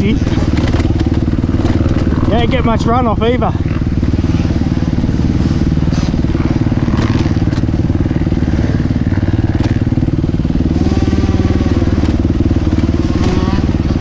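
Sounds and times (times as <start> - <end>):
dirt bike engine idling: 0.0 - 14.0.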